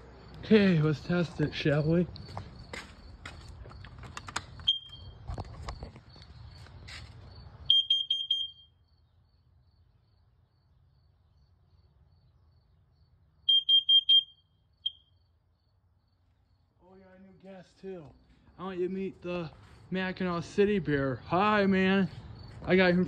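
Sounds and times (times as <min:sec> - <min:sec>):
high-pitched alarm beeps: 0:04.6 - 0:05.2, 0:07.7 - 0:08.8, 0:13.5 - 0:15.2.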